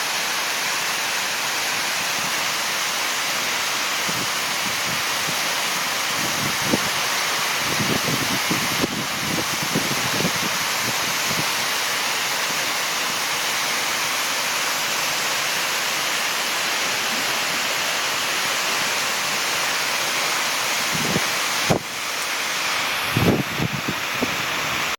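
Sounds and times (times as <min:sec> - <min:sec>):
waterfall roaring: 0:00.0 - 0:24.9.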